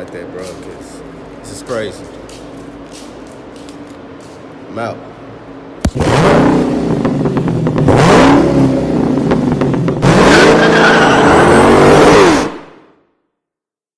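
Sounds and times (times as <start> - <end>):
car engine accelerating hard: 5.9 - 12.7.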